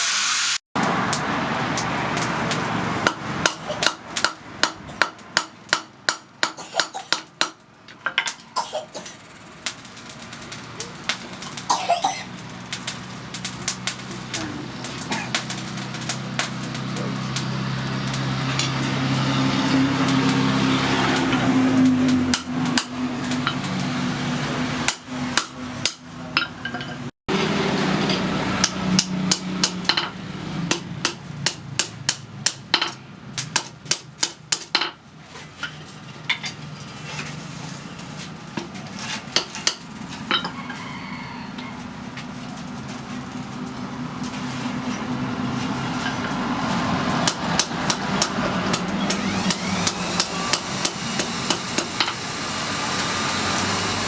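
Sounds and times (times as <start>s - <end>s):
hammer striking steel on anvil: 2.2s - 7.6s, 22.3s - 23.8s, 24.8s - 35.0s, 45.9s - 52.2s.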